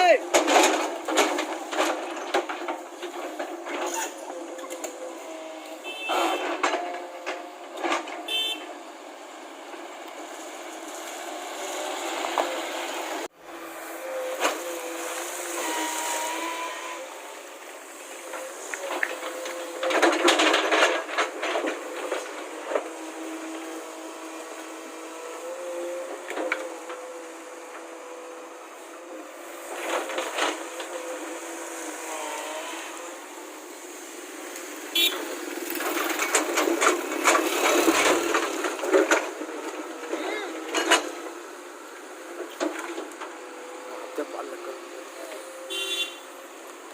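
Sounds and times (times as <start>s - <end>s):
sharp knocks and clatters: 0.2s - 4.9s, 18.3s - 23.1s
short horn toot: 5.6s - 6.6s, 45.7s - 46.2s.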